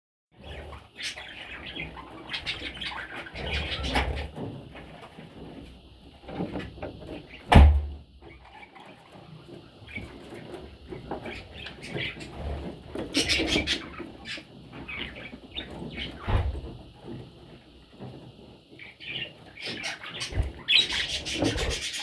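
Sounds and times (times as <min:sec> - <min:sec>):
baby budgerigars chirping: 0:00.4 - 0:05.3, 0:06.3 - 0:17.2, 0:18.7 - 0:22.0
loud thump: 0:07.5 - 0:08.0.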